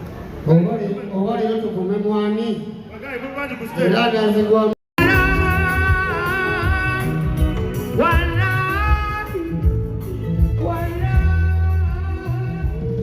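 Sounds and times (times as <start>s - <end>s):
heavy bass and guitar backing: 5.0s - 13.0s.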